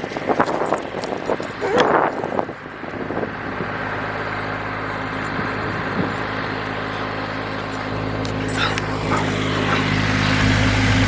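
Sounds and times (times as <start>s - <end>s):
tractor engine running: 0.0s - 11.0s.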